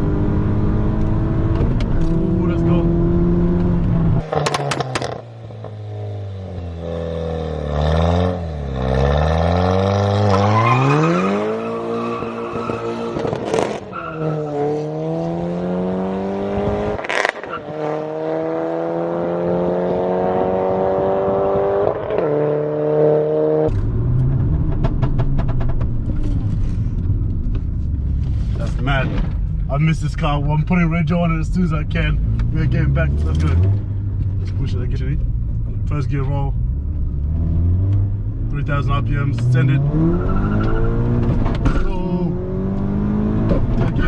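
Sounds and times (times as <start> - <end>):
car engine accelerating hard: 0.0 - 44.0.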